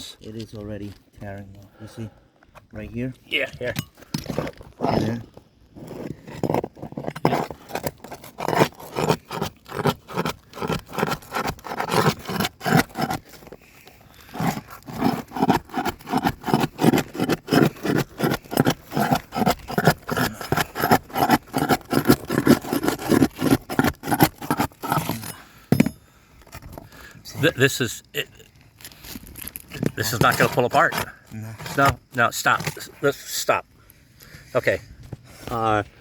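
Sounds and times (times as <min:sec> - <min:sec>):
tool scraping under shingles: 0:00.0 - 0:36.0.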